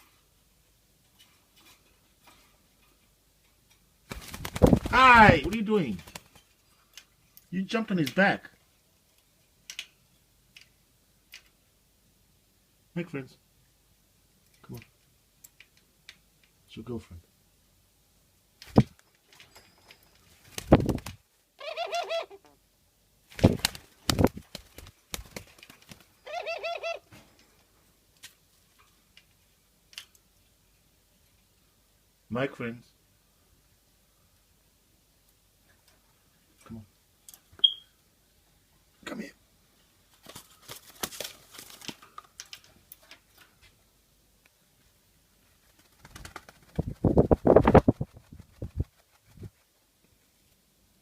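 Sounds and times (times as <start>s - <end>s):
dove warbling call: 26.3s - 27.0s.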